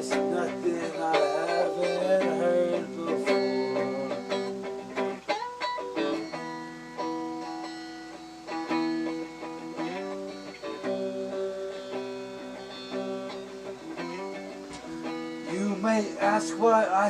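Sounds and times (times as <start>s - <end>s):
person singing: 0.0s - 5.3s, 15.4s - 17.0s
guitar strumming chords: 0.0s - 17.0s.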